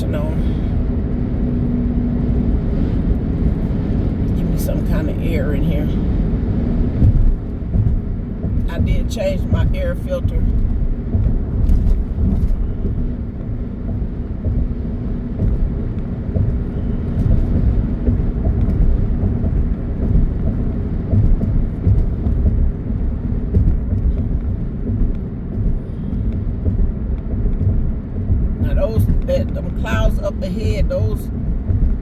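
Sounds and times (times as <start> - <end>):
road and wind noise in car: 0.0 - 32.0.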